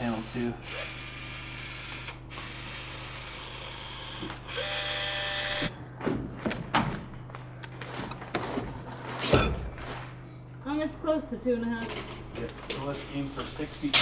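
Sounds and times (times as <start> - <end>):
small electric motor whirring: 0.0 - 5.7.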